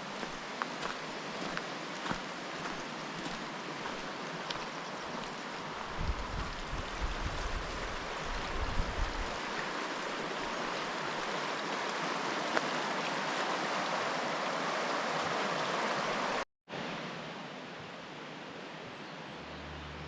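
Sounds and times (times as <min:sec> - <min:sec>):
river rushing: 0:00.0 - 0:20.0
wind thumps on microphone: 0:06.0 - 0:09.4.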